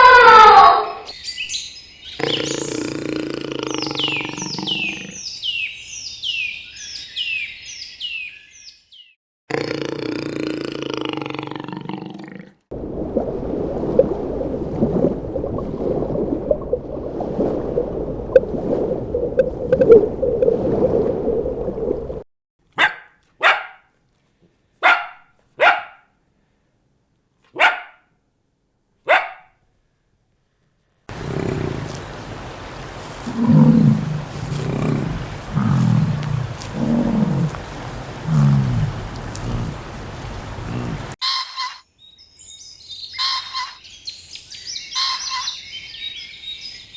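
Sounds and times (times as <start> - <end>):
dog barking: 22.8 - 23.9, 24.8 - 26.1, 27.5 - 28.1, 29.0 - 29.6
dog growling: 31.1 - 32.3, 33.0 - 41.2.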